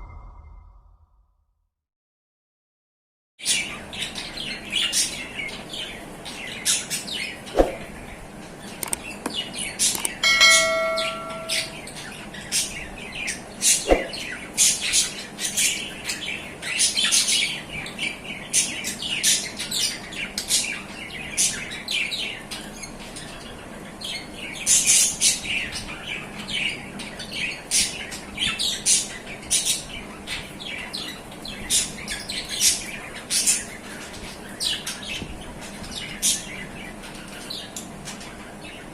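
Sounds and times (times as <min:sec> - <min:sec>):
short bell-like ring: 0:10.2 - 0:11.9.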